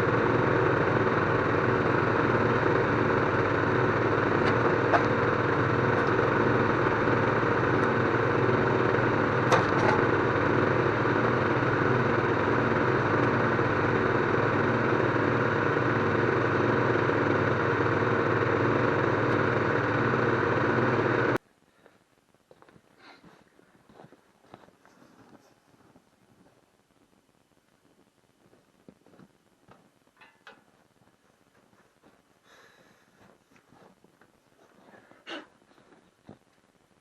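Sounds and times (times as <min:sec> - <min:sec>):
engine idling: 0:00.0 - 0:21.4.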